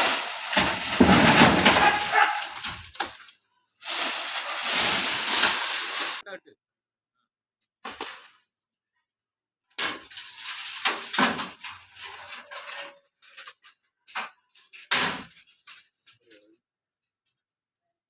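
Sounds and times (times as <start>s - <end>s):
palm fronds crashing down: 0.0s - 6.2s, 9.8s - 13.6s.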